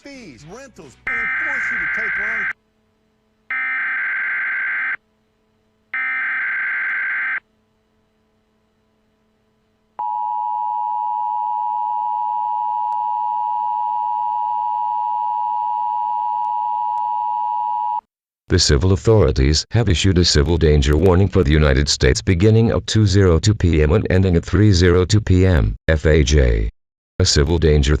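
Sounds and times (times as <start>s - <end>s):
digital data bursts: 1.1s - 2.6s.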